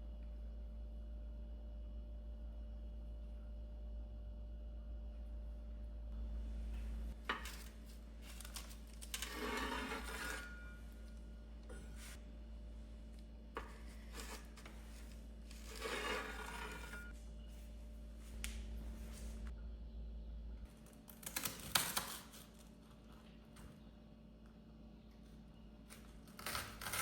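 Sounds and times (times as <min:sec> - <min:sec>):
faint steady hum: 0:00.0 - 0:27.0.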